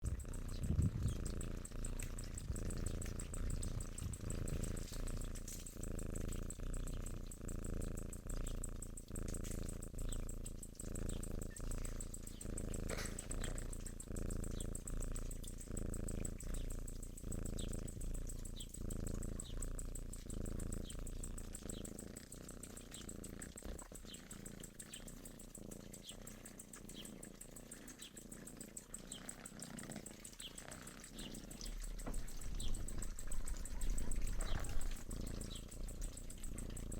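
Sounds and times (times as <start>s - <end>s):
cat purring: 0.0s - 36.9s.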